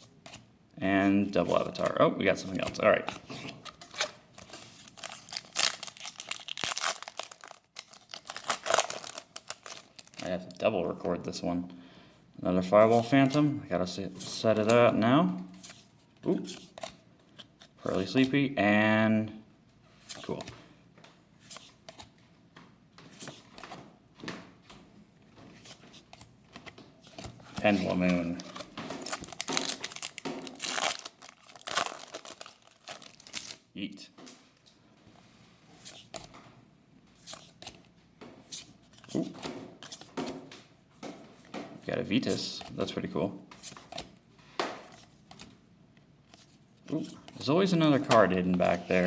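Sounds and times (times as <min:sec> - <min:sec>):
foil wrapper crinkling and tearing: 0:04.4 - 0:10.3, 0:27.8 - 0:33.6.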